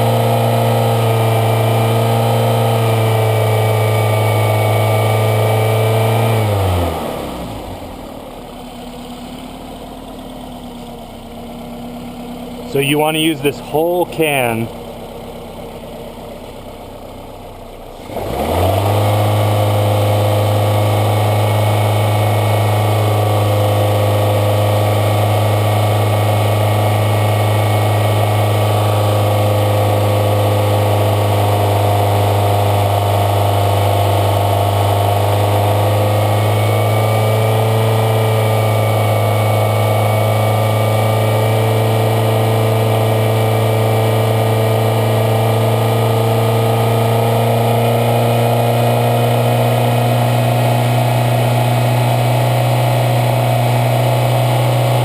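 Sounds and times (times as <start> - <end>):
car engine revving: 17.9 - 55.0.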